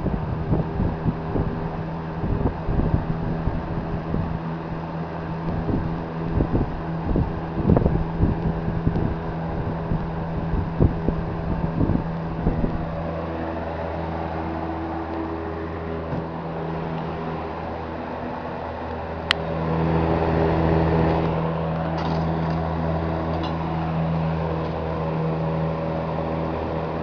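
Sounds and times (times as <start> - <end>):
box fan motor humming: 0.0 - 27.0
fan airflow buffeting microphone: 0.0 - 27.0.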